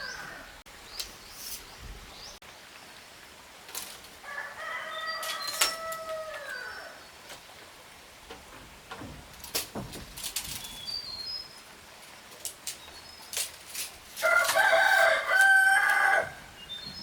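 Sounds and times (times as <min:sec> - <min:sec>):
rooster crowing: 0:04.2 - 0:06.9, 0:14.2 - 0:16.5
sharp knocks: 0:08.3 - 0:10.3.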